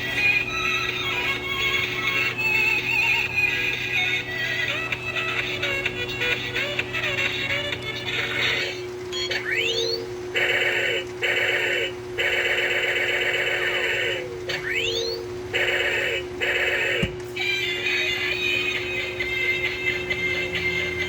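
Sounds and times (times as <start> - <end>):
rapid-fire electronic buzzing: 0.0 - 21.0
steady hum: 0.0 - 21.0
toy gun laser zap: 9.2 - 17.2.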